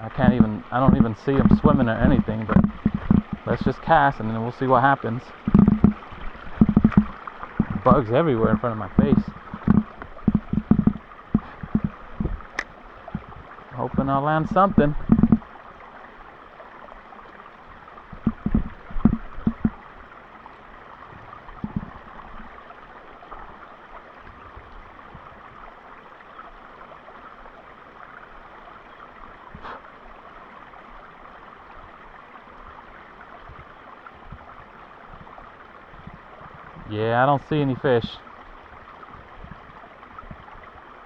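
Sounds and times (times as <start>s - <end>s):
low knocks: 0.0s - 4.0s, 5.4s - 13.4s, 14.7s - 15.5s, 18.1s - 19.8s, 21.6s - 22.0s
creek water running: 0.0s - 41.0s.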